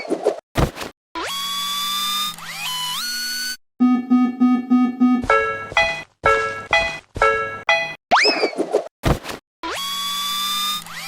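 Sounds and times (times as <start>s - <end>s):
cartoon crossing alarm dings: 3.8s - 8.0s.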